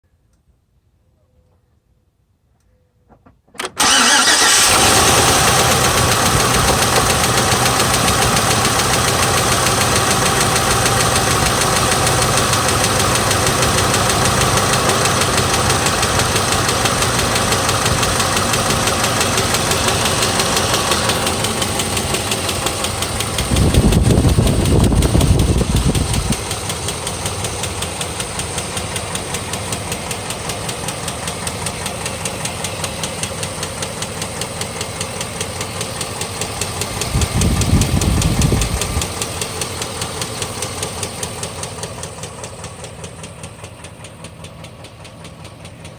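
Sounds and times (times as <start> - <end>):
engine idling with knocking: 3.8 - 45.9
low rumble: 21.7 - 26.6.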